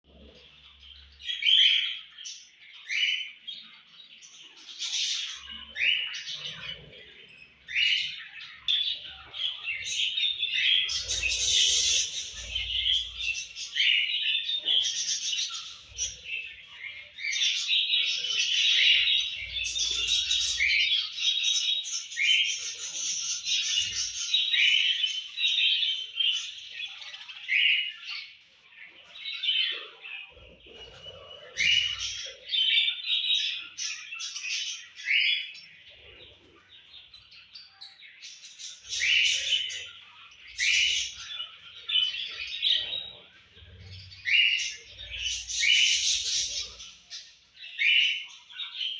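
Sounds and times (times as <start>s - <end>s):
budgerigars chirping and chattering: 0.0s - 48.9s.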